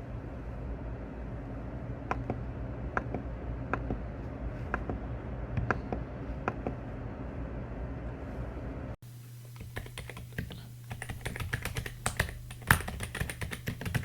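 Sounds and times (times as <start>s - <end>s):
low steady hum: 0.0s - 14.0s
mechanical keyboard keys clacking: 9.6s - 14.0s.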